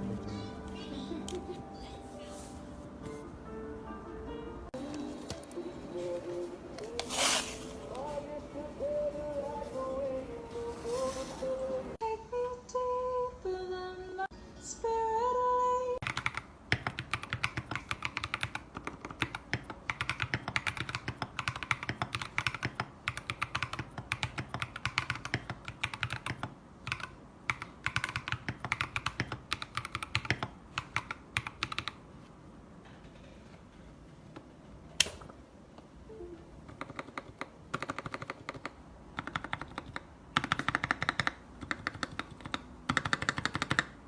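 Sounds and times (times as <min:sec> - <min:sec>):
held musical notes: 0:00.0 - 0:05.0
mechanical keyboard typing: 0:16.0 - 0:32.0, 0:36.7 - 0:44.0.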